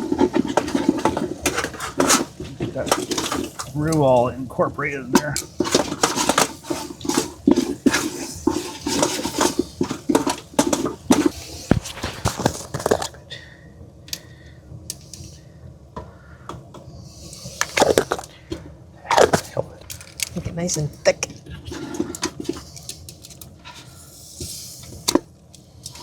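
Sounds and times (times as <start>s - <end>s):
utensil scraping a cooking pot: 0.0s - 4.2s, 5.1s - 13.2s, 17.0s - 25.2s.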